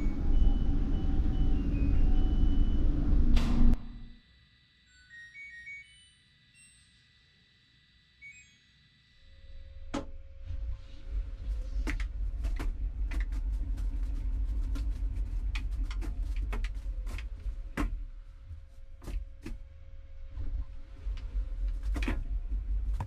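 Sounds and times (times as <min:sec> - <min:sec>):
dryer drum rumble: 0:00.0 - 0:04.2, 0:09.9 - 0:23.0
steady hum: 0:00.0 - 0:04.2.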